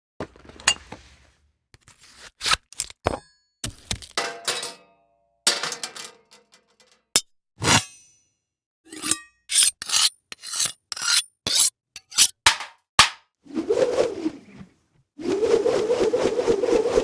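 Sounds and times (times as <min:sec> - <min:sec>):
metal scraping: 0:08.9 - 0:13.2.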